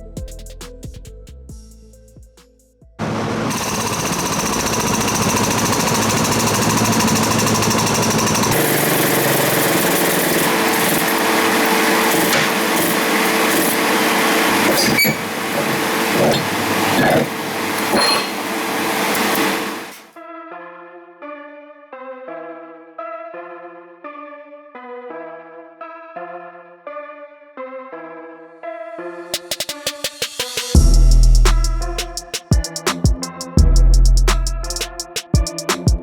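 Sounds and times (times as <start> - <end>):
power tools on car body panels: 3.0 - 20.1.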